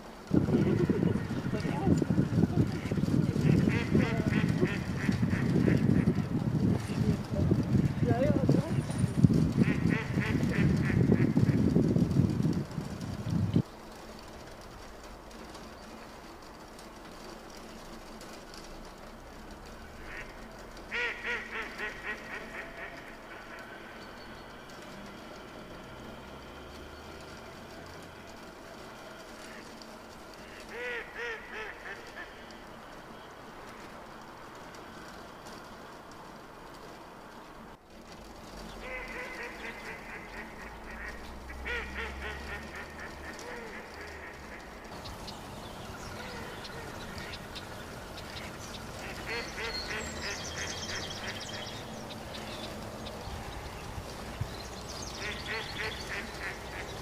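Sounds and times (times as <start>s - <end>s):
ducks quacking: 0.4s - 7.2s, 9.6s - 11.7s, 20.0s - 24.0s, 30.4s - 32.5s, 38.8s - 52.8s, 55.0s - 57.0s
duck quacking: 2.8s - 6.2s, 38.8s - 44.7s, 49.0s - 51.3s, 55.2s - 56.9s.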